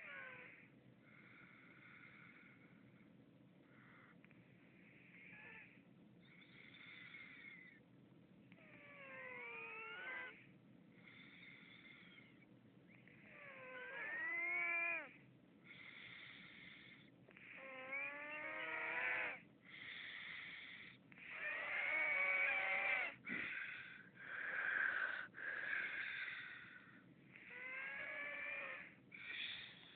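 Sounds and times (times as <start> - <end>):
man snoring: 23.3 - 26.8.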